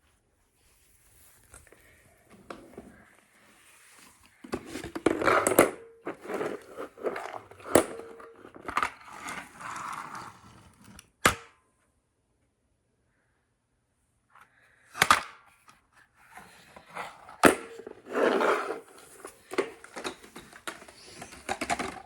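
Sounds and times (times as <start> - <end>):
plastic bricks clattering: 4.6 - 9.5, 17.0 - 22.0.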